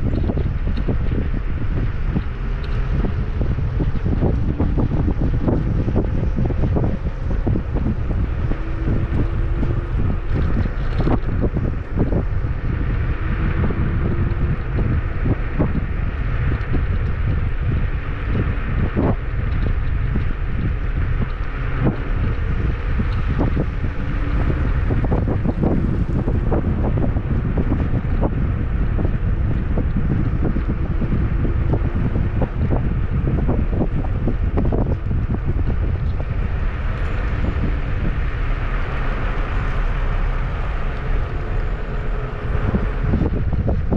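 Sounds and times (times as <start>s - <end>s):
faint motor whine: 0.0s - 43.9s
wind buffeting microphone: 0.0s - 43.9s.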